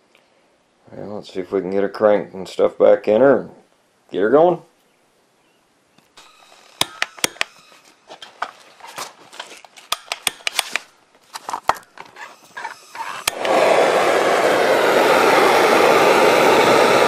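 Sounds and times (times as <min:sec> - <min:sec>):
heat gun blowing hiss: 0:06.2 - 0:08.0, 0:12.2 - 0:17.0.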